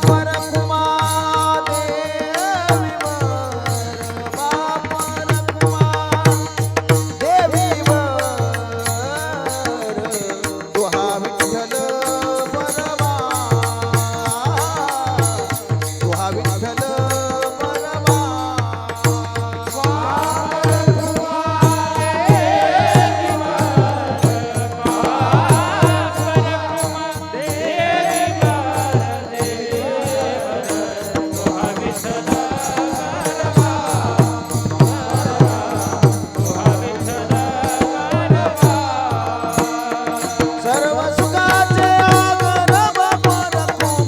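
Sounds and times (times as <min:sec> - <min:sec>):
devotional melody: 0:00.0 - 0:44.0
steady drum beat: 0:31.1 - 0:44.0.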